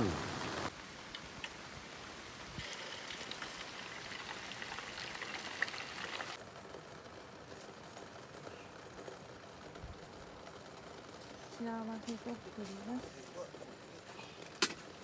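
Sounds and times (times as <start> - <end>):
steady rain falling: 0.0 - 6.4.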